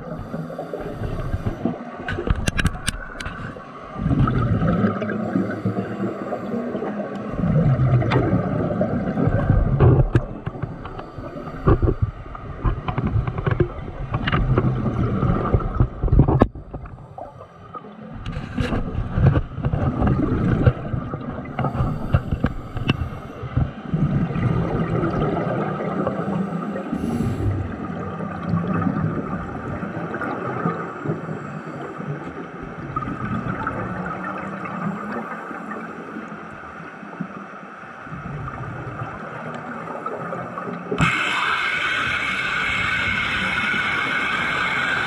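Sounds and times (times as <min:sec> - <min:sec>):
underwater bubbling and gurgling: 0:00.0 - 0:45.0
sharp clicks and crackles: 0:01.0 - 0:03.6, 0:09.2 - 0:17.3.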